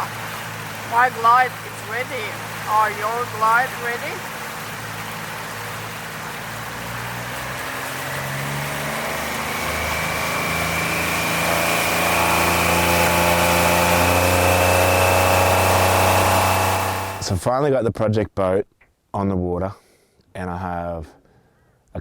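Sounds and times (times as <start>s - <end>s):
outboard motor throttling up: 0.0s - 17.4s
wind and water hiss: 0.0s - 17.5s.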